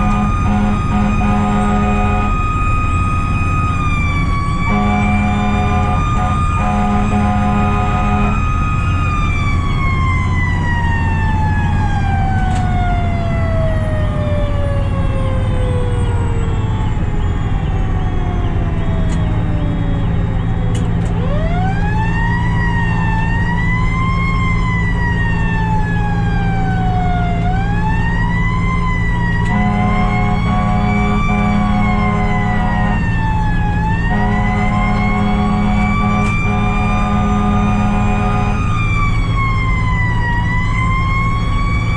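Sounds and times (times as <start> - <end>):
air horn blasts: 0.0 - 2.6, 4.6 - 8.6, 29.4 - 33.2, 34.0 - 38.8
diesel engine: 0.0 - 41.9
fire truck siren wailing: 0.0 - 41.9
road rumble: 0.0 - 41.9.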